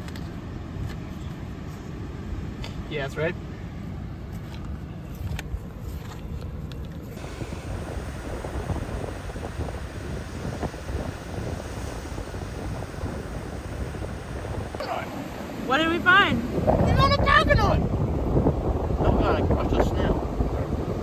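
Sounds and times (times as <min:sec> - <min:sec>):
wind buffeting microphone: 0:07.1 - 0:21.0
ocean surf: 0:07.2 - 0:21.0.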